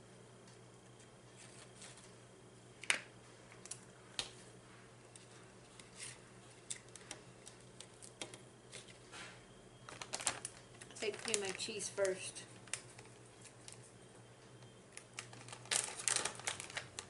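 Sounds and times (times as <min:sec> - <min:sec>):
food and packaging being handled: 0:01.0 - 0:02.2, 0:04.8 - 0:14.0, 0:14.6 - 0:17.0.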